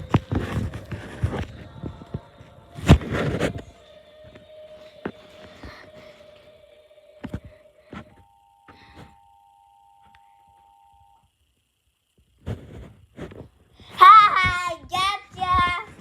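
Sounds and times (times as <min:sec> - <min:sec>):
steady single tone: 0:07.3 - 0:11.4
emergency alert two-tone signal: 0:08.0 - 0:11.3
child's high wavering voice: 0:13.9 - 0:16.0.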